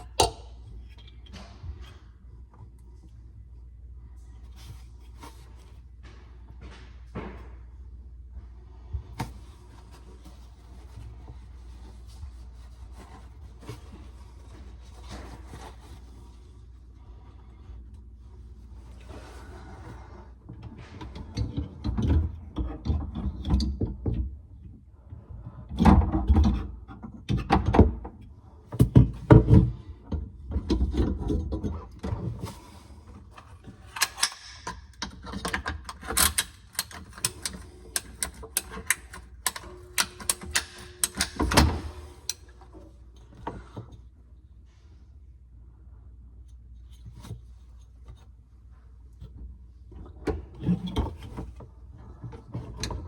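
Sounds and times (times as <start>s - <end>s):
objects knocking and clunking: 4.5s - 8.0s, 28.8s - 44.0s.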